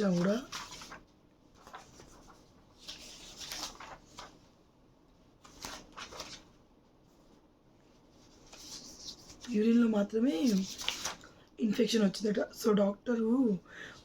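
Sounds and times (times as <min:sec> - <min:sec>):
paper rustling and crinkling: 0:00.0 - 0:04.6, 0:05.2 - 0:11.4.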